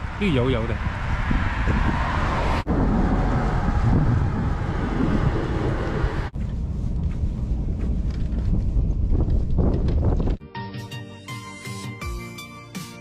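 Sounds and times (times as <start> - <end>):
vehicle road noise: 0.0 - 10.4
wind buffeting microphone: 0.0 - 10.4.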